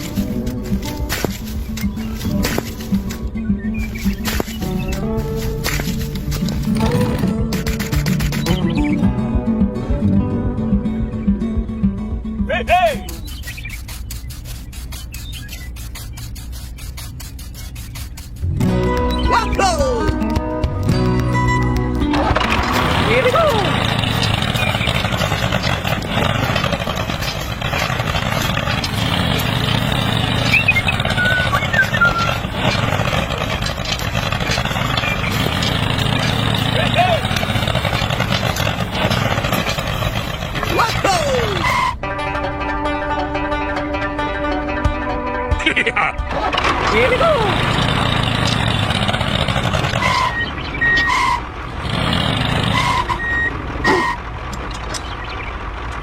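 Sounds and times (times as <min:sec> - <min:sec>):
small engine rumbling and rattling: 0:00.0 - 0:56.0
reversing alarm beeping: 0:50.0 - 0:51.4, 0:52.7 - 0:54.2.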